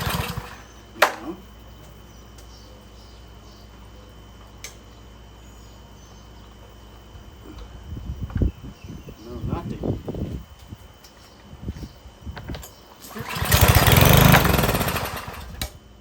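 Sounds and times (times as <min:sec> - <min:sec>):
small engine firing and stopping: 0:00.0 - 0:00.8, 0:13.0 - 0:15.8.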